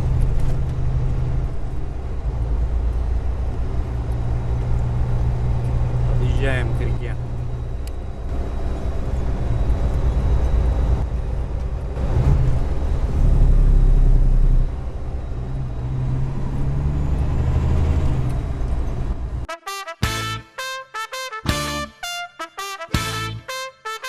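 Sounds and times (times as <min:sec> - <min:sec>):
vehicle engine drone: 0:00.0 - 0:19.5
road rumble: 0:00.0 - 0:20.4
brass music: 0:19.5 - 0:24.0.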